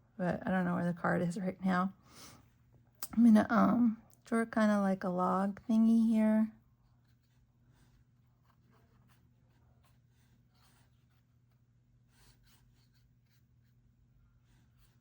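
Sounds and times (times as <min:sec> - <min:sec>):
low electrical hum: 0:00.0 - 0:15.0
pencil scratching on paper: 0:06.8 - 0:15.0.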